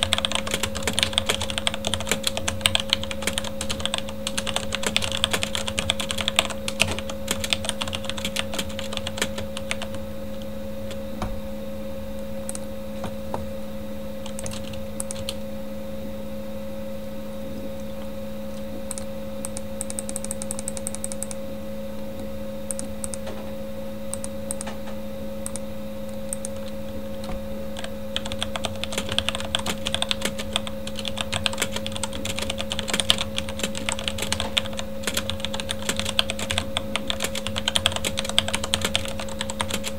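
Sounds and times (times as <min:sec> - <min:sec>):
mechanical keyboard typing: 0:00.0 - 0:10.0, 0:14.2 - 0:15.4, 0:18.9 - 0:21.4, 0:22.7 - 0:23.2, 0:27.8 - 0:39.9
computer fan hum: 0:00.0 - 0:39.9.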